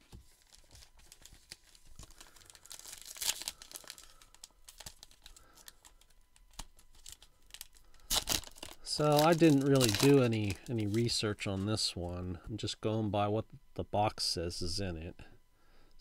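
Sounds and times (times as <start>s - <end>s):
wrapper crinkling and tearing: 0.2s - 11.7s.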